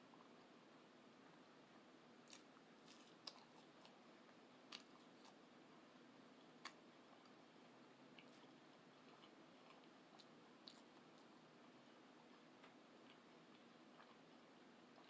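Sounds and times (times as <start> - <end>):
person chewing food: 2.2 - 5.6, 6.4 - 15.0.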